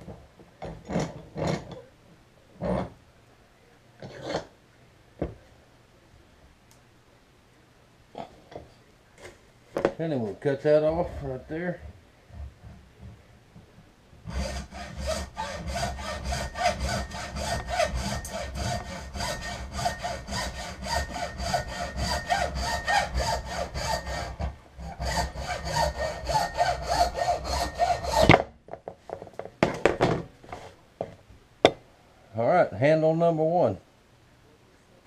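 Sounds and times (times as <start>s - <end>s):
saw cutting antler: 14.2s - 28.5s.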